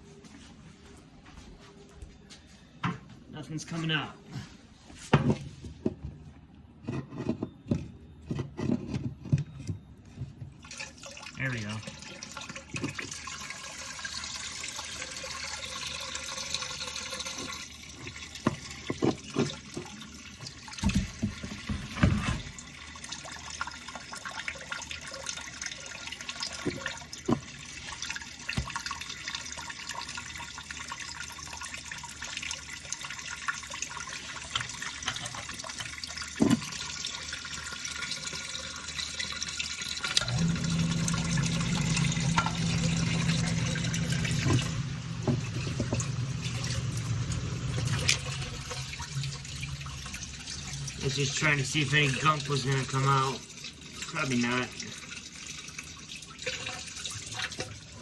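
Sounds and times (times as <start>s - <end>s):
water running from drain valve: 10.6s - 58.0s
low hum: 40.2s - 51.1s.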